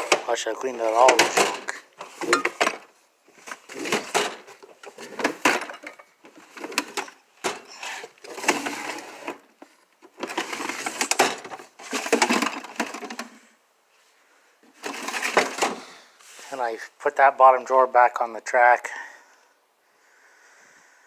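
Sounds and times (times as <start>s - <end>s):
metal toolbox rattling: 0.0s - 9.4s, 10.1s - 13.2s, 14.8s - 15.9s.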